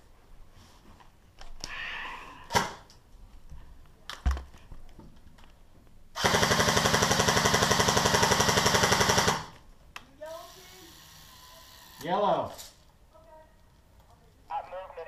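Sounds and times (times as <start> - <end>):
airsoft gun full-auto burst: 6.2 - 9.6.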